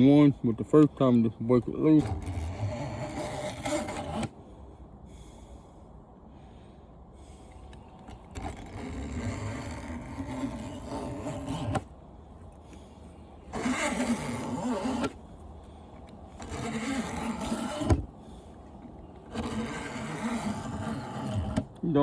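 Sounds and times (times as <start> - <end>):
blade scraping metal fins: 0.7 - 4.3, 8.1 - 11.9, 12.6 - 21.8.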